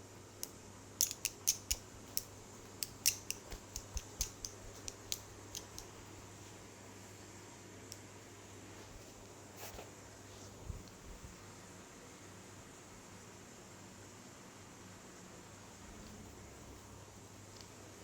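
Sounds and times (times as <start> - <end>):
sharp crisp clicks or snips: 0.4 - 5.9.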